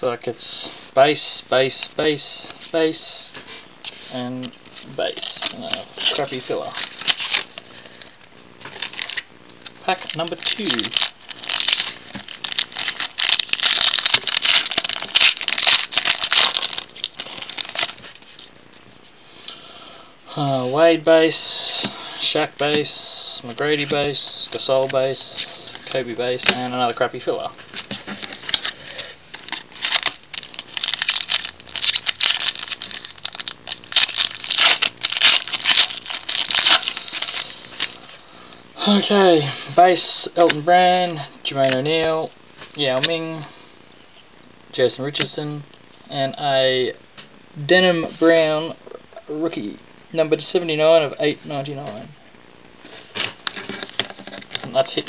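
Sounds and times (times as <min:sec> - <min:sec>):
card pack wrapper tearing and crinkling: 0:05.1 - 0:07.6, 0:08.6 - 0:18.5, 0:27.8 - 0:38.0.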